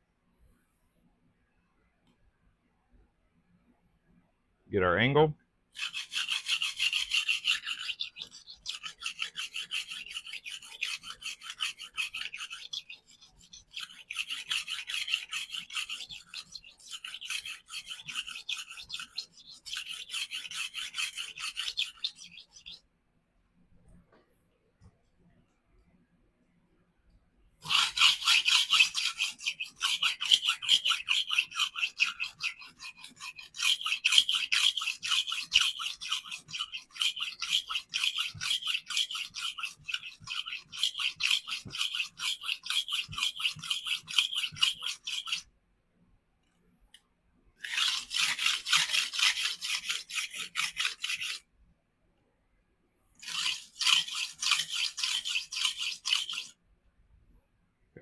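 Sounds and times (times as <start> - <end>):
knife scraping on sharpening stone: 5.8 - 22.8, 27.6 - 45.5, 47.6 - 51.4, 53.2 - 56.5.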